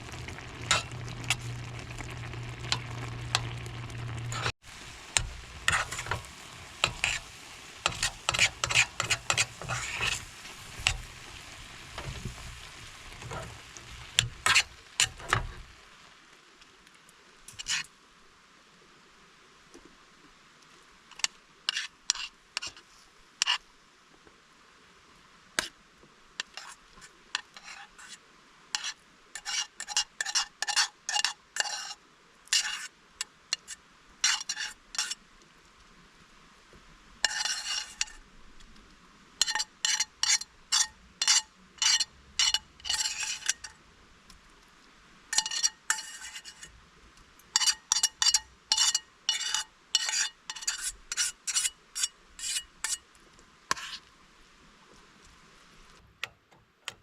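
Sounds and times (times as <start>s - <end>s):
utensil scraping cookware: 0.1s - 11.2s, 11.8s - 15.6s, 17.5s - 17.8s, 21.7s - 22.8s, 26.4s - 26.8s, 27.4s - 28.2s, 28.8s - 32.9s, 33.5s - 35.2s, 37.2s - 38.2s, 39.4s - 43.8s, 45.3s - 46.7s, 47.5s - 53.0s, 53.7s - 54.0s.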